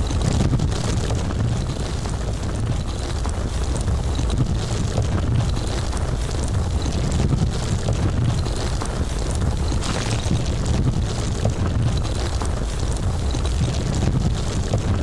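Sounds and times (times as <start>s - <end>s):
deep landslide rumble: 0.0s - 15.0s
stones crackling: 0.0s - 15.0s.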